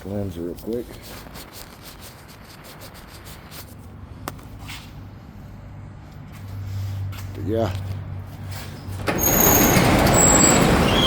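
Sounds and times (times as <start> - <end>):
lens wiping against microphone: 0.4 - 5.0.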